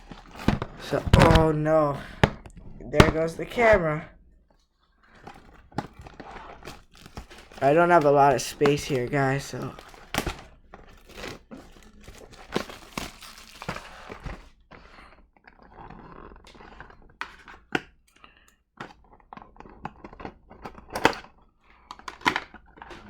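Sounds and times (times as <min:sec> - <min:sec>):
rustling and crinkling: 0:00.0 - 0:17.7.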